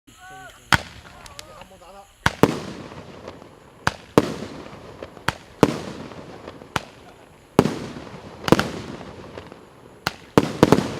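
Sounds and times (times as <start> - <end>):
firework reports: 0.1 - 10.9
rumble after firework shots: 2.2 - 10.9.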